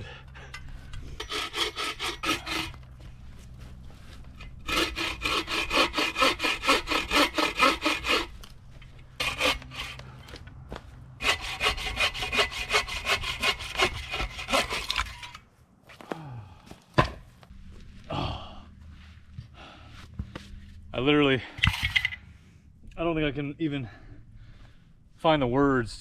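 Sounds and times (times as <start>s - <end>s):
hand saw cutting wood: 1.0s - 2.8s, 4.4s - 8.4s, 9.1s - 10.2s, 11.2s - 15.4s.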